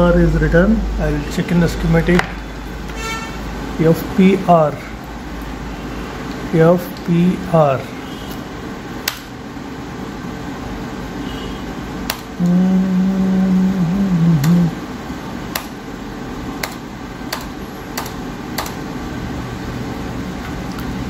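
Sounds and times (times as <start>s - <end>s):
fan-like hum: 0.0s - 21.0s
person humming: 12.4s - 14.9s
computer mouse clicks: 16.6s - 18.8s.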